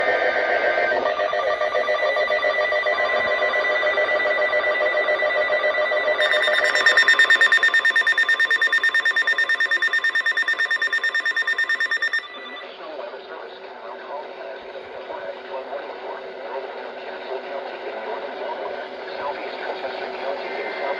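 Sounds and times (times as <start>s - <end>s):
electronic alarm tones: 0.0s - 12.8s.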